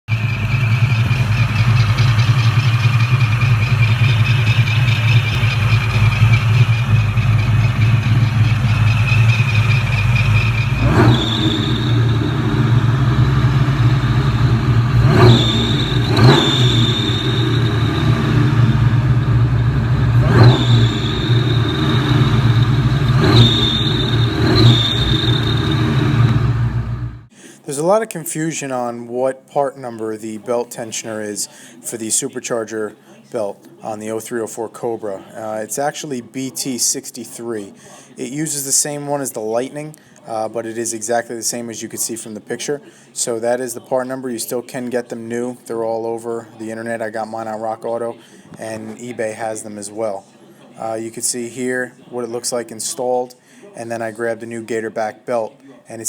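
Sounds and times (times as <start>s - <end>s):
high belt squeal: 0.1s - 26.8s
car engine idling and revving: 0.1s - 27.3s.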